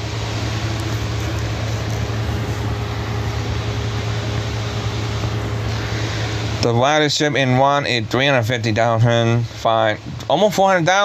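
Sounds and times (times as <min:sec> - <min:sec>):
even rushing noise: 0:00.0 - 0:08.2
low mechanical hum: 0:00.0 - 0:11.0.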